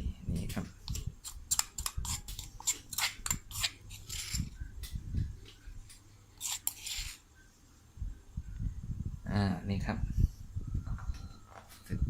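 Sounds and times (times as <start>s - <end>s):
spoon scraping a mortar: 0.8s - 4.6s, 6.3s - 7.3s.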